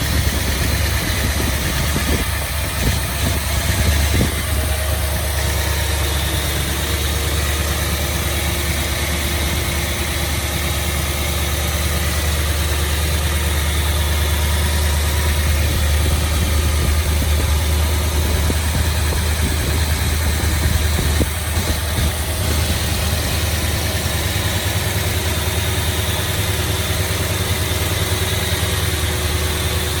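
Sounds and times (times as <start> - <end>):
car engine idling: 0.0 - 30.0.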